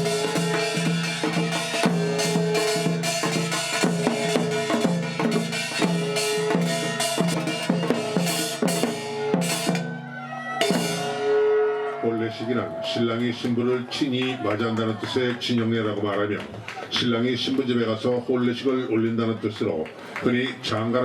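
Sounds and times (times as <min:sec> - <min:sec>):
rapid drumming: 0:00.0 - 0:10.0.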